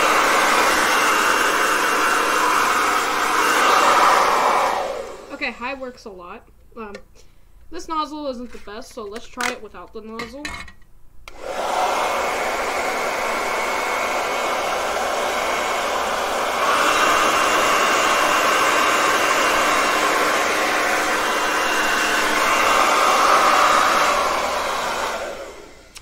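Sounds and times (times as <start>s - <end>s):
hair dryer blowing: 0.0s - 6.0s, 11.3s - 26.0s.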